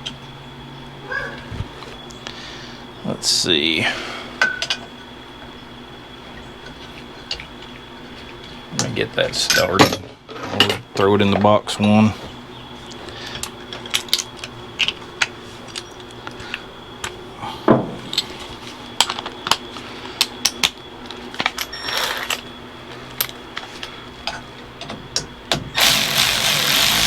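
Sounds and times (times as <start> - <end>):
loud steady noise: 25.8 - 27.0.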